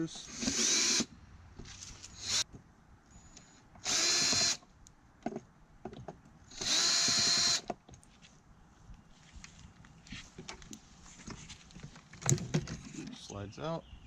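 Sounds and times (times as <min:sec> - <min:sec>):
power drill running: 0:00.3 - 0:01.1, 0:02.2 - 0:02.4, 0:03.1 - 0:04.6, 0:06.5 - 0:07.6.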